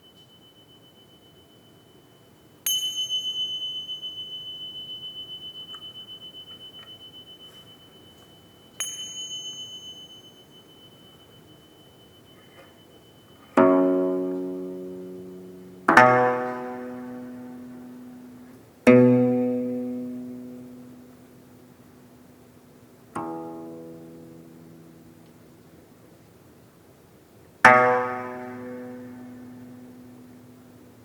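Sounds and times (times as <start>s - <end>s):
singing bowl ringing: 0.0s - 18.6s
plucked zither notes: 12.2s - 22.3s, 23.2s - 25.5s, 27.6s - 31.0s.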